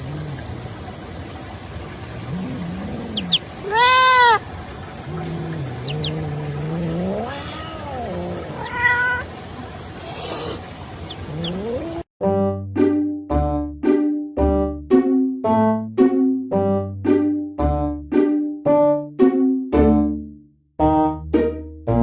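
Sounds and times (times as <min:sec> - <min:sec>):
dog whining: 0:05.2 - 0:09.2.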